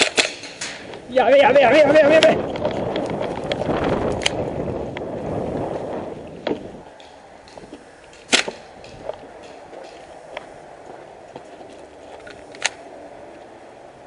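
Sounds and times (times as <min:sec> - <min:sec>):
airsoft gun cracks: 0:00.0 - 0:01.0, 0:07.0 - 0:10.0
rustling of movement: 0:00.0 - 0:14.0.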